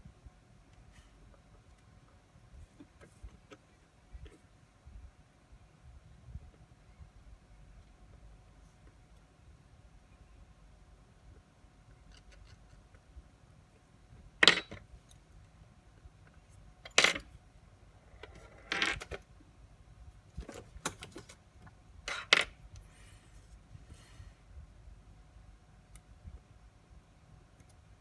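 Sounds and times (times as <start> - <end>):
metal parts clinking on bench: 14.4 - 14.8, 16.9 - 17.3, 22.1 - 22.6.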